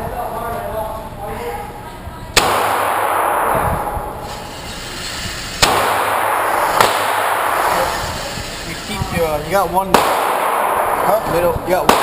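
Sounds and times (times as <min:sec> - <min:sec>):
pistol shots echoing: 0:02.4 - 0:04.5, 0:05.6 - 0:08.6, 0:09.6 - 0:12.0.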